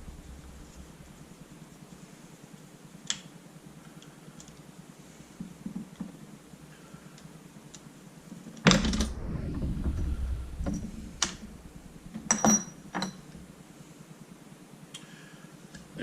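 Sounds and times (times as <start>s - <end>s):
low rumble: 0.0s - 1.8s, 8.7s - 13.3s.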